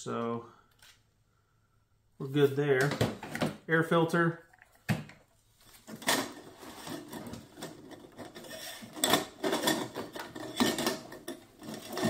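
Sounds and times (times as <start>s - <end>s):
parts rubbing and scraping: 5.5s - 12.0s.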